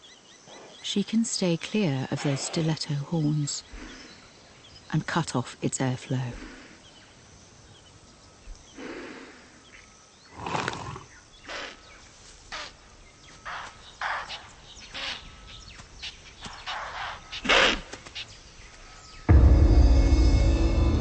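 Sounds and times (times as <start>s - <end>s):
leopard snorting and growling: 10.3s - 11.8s.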